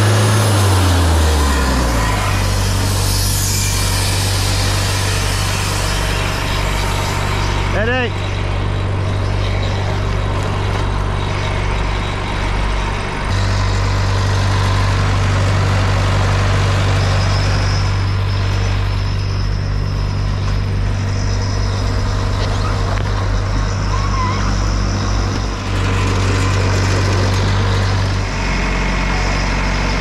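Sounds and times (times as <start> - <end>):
engine humming: 0.0 - 30.0
faint high whine: 10.8 - 28.2.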